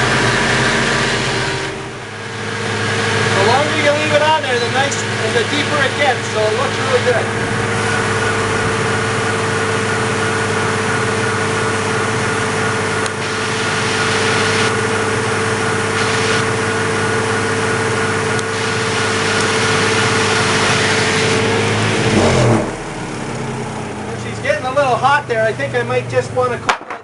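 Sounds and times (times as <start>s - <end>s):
engine at high revs: 0.0s - 26.6s
wheel rubbing on wooden board: 13.1s - 16.6s, 18.4s - 22.8s.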